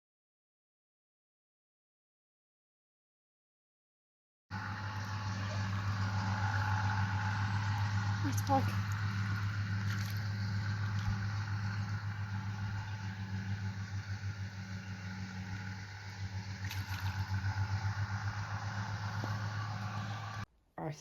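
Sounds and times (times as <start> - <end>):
engine running with pulsing hum: 4.5 - 20.5.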